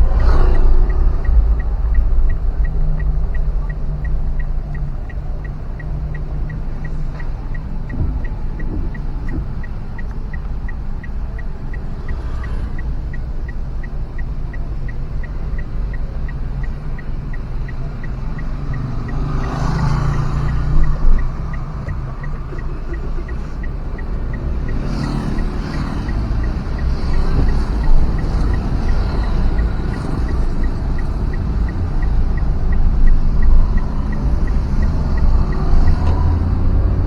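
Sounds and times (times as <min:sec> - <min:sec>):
faint regular ticking: 0:00.0 - 0:37.0
road vehicle rumble: 0:00.0 - 0:37.0.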